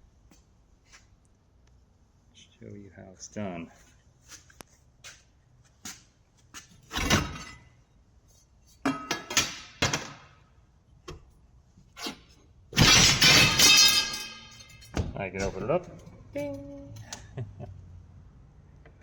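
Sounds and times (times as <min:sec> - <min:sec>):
metal pipes clanking: 0:12.8 - 0:16.5.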